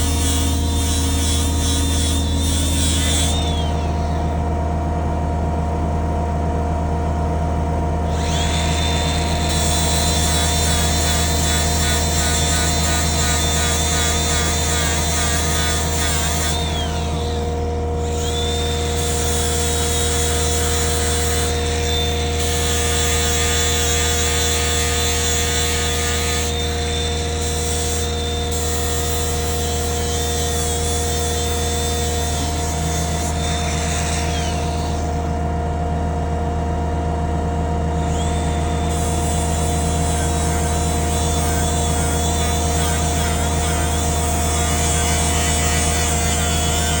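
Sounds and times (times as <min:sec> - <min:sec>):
welder engine running: 0:00.0 - 0:47.0
arc welding hiss: 0:08.4 - 0:35.1, 0:38.3 - 0:47.0.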